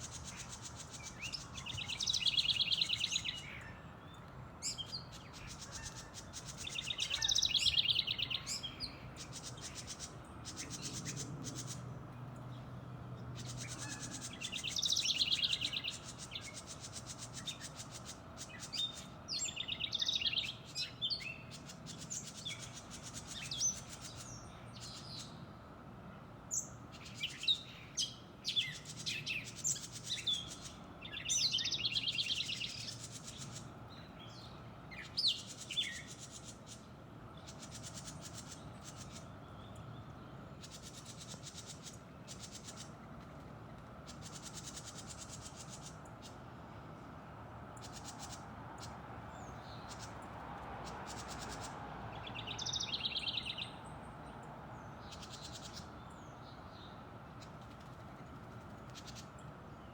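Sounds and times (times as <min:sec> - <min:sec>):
birds buzzy chattering: 0:34.8 - 0:39.8, 0:40.6 - 0:46.4.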